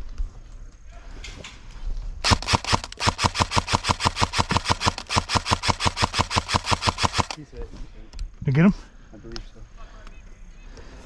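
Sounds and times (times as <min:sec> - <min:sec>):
airsoft gun shots: 0:02.2 - 0:07.4.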